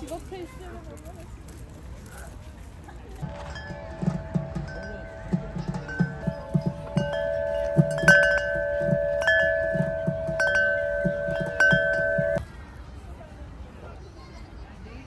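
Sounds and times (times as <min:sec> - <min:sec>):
chimes ringing: 0:03.2 - 0:12.4.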